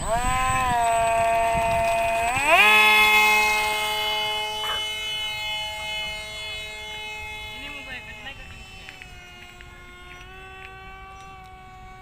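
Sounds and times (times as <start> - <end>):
model airplane motor whining: 0.0 - 12.0.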